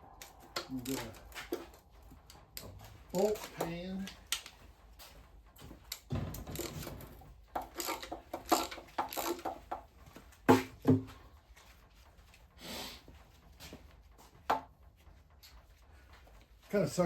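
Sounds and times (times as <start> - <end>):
sharp metal knocks: 5.9 - 9.9.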